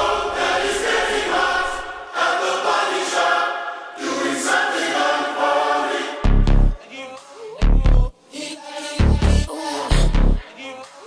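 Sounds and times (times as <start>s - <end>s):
choir singing sustained chords: 0.0s - 7.0s.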